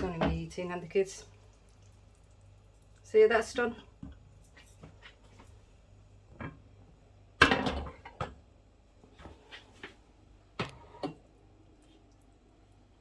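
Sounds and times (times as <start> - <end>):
kitchen clatter: 7.4 - 8.4.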